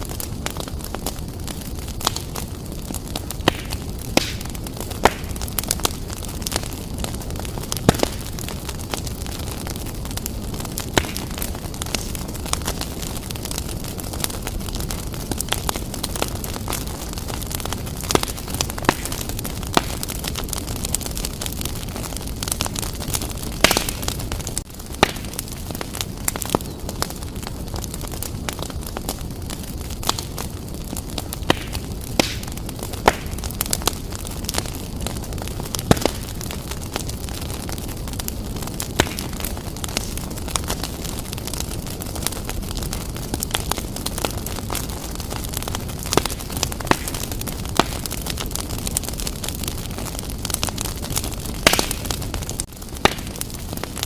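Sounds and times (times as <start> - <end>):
fire crackling and popping: 0.0 - 54.0.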